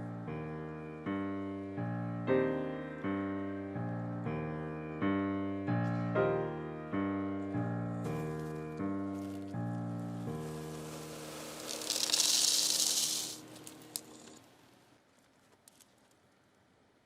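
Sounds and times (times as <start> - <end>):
piano chords ringing: 0.0 - 11.6.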